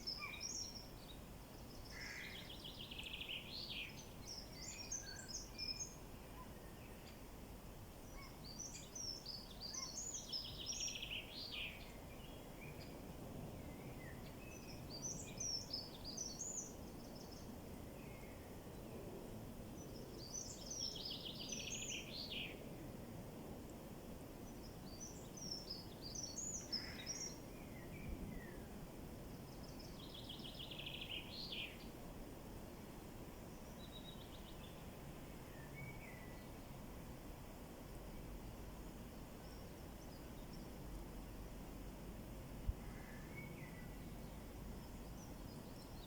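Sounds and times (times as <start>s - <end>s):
songbird singing: 0.0s - 7.4s, 8.0s - 22.8s, 23.6s - 32.0s, 32.8s - 37.0s, 38.0s - 46.0s.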